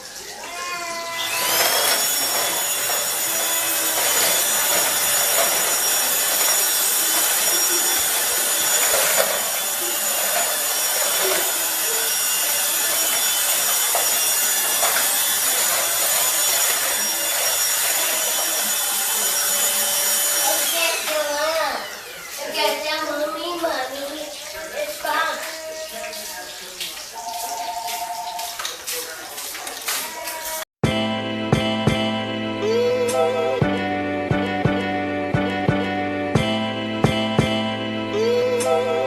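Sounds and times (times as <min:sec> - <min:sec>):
small electric motor whirring: 0:01.1 - 0:23.2.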